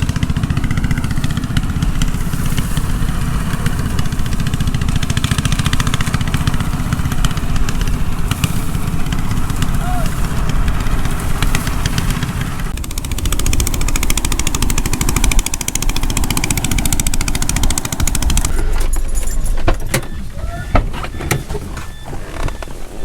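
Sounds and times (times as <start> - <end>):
rapid even rattle: 0.0 - 23.0
vehicle engine rumbling: 0.0 - 23.0
knocks and clicks: 10.5 - 23.0.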